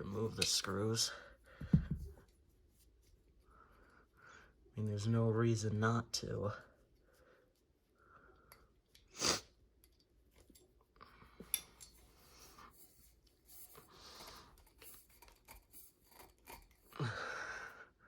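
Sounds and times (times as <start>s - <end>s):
screwdriver metal clicks and scrapes: 0.1s - 0.8s, 11.4s - 16.9s.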